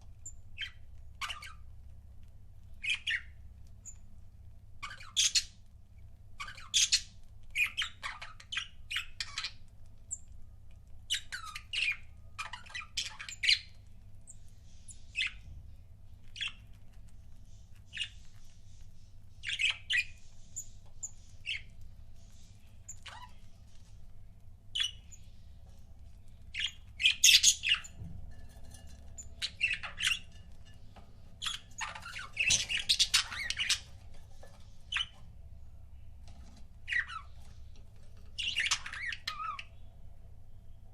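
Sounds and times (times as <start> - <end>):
budgerigars chirping and squawking: 0.6 - 1.6, 2.8 - 4.0, 4.8 - 5.6, 6.4 - 9.6, 11.1 - 13.8, 14.6 - 15.5, 16.3 - 16.8, 17.5 - 24.0, 24.8 - 25.6, 26.5 - 28.0, 28.6 - 35.2, 36.4 - 39.8.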